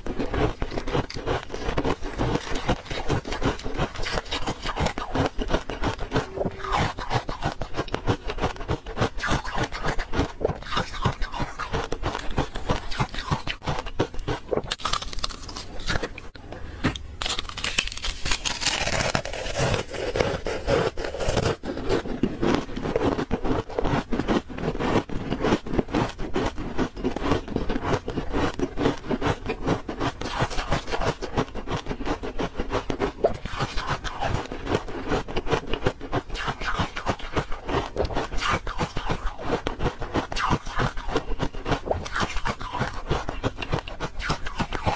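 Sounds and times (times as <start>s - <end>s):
ice being chewed: 0.0s - 44.9s.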